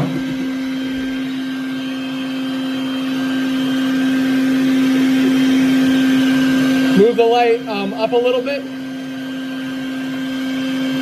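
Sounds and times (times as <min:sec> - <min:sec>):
vacuum motor humming: 0:00.0 - 0:11.0.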